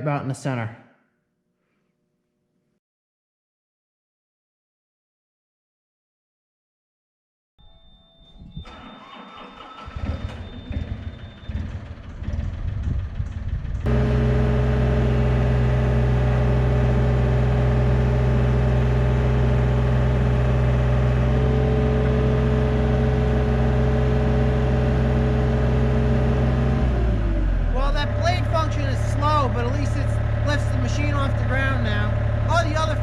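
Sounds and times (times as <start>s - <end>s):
excavator diesel engine running: 8.7s - 33.0s.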